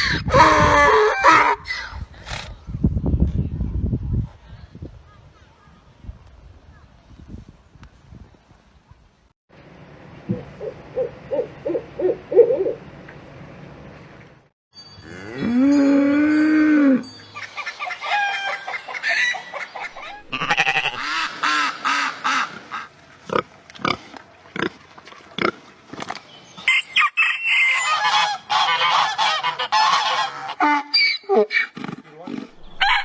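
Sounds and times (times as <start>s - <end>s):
geese honking: 17.4s - 22.9s, 27.6s - 31.0s.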